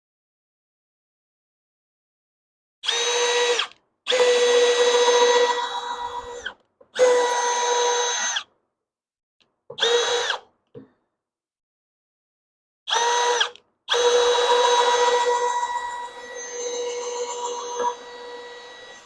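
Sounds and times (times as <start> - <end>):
cordless drill whining: 2.8 - 8.5, 9.8 - 10.5, 12.9 - 19.0.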